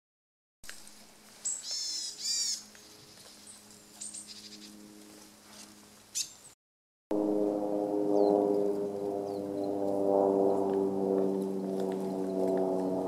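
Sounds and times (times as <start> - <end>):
bird call notes: 1.5 - 2.7.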